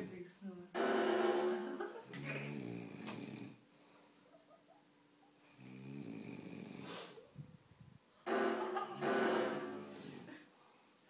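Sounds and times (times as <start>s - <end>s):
raspy snoring: 2.2s - 3.6s, 5.4s - 7.2s.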